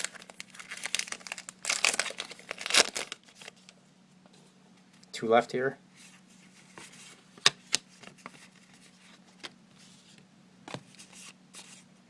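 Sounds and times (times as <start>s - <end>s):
cards rustling: 0.0s - 3.7s.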